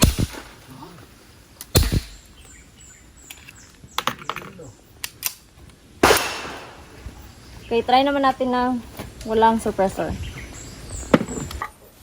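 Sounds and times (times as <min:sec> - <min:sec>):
suppressed gunshots: 0:00.0 - 0:00.6, 0:01.7 - 0:02.3, 0:06.0 - 0:07.3.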